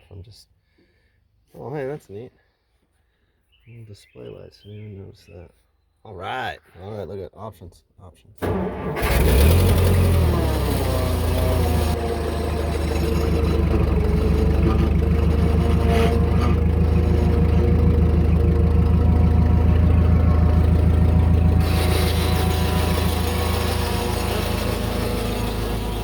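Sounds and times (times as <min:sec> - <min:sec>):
engine running with low pulsing: 0:08.7 - 0:26.0.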